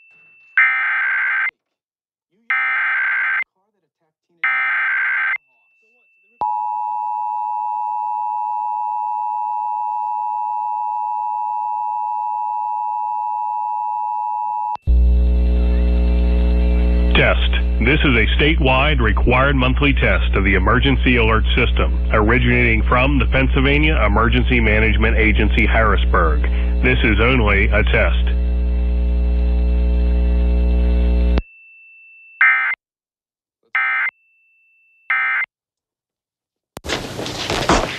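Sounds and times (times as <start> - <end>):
buzzy mains hum: 14.9 - 31.4
noisy sound: 14.9 - 31.4.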